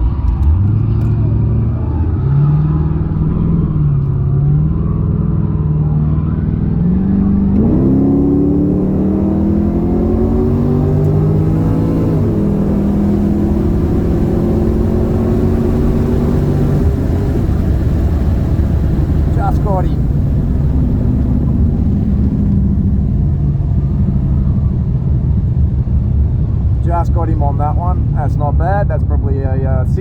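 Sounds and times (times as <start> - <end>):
car engine revving: 0.0 - 30.0.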